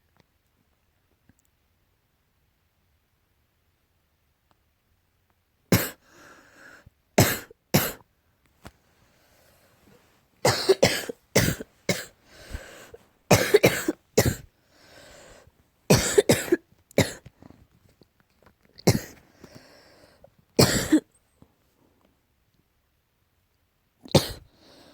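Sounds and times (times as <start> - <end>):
person coughing: 5.7 - 6.0, 7.2 - 8.0, 10.4 - 14.5, 15.9 - 17.3, 18.8 - 19.2, 20.6 - 21.1, 24.1 - 24.5
faint breaths: 6.0 - 6.9, 8.8 - 10.3, 11.7 - 13.3, 14.4 - 15.6, 19.2 - 20.4, 24.4 - 24.9.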